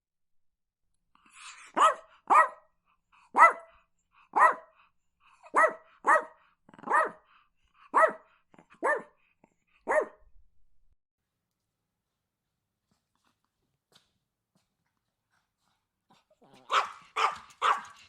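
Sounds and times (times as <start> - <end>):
small dog yapping: 1.4 - 2.6, 3.4 - 3.7, 5.5 - 7.2, 7.9 - 8.2, 8.8 - 9.1, 9.9 - 10.1, 16.1 - 18.0.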